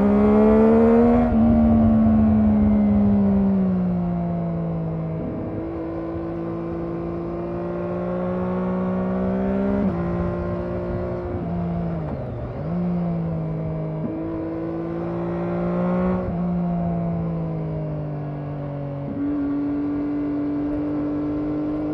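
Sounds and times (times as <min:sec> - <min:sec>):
motorcycle engine accelerating: 0:00.0 - 0:21.9.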